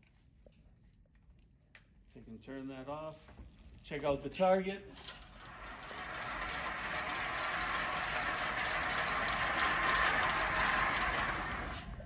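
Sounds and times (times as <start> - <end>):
target carrier mechanical rattle: 5.0 - 12.0.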